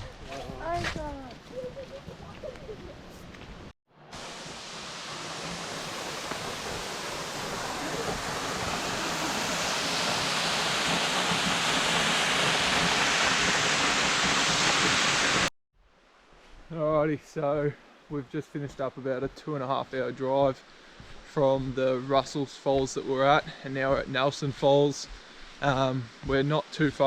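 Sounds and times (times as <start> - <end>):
waterfall rushing: 4.0 - 15.5.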